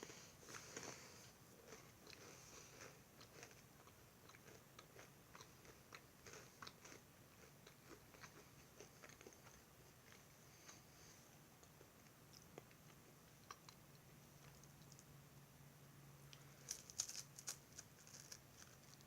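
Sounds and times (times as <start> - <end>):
person chewing crunchy food: 0.0 - 10.9, 16.3 - 19.0.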